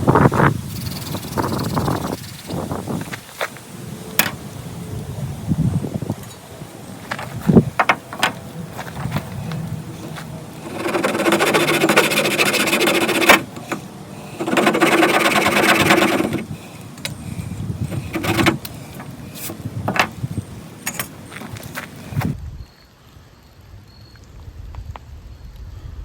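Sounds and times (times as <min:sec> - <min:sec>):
hand drill grinding friction: 0:07.1 - 0:20.3.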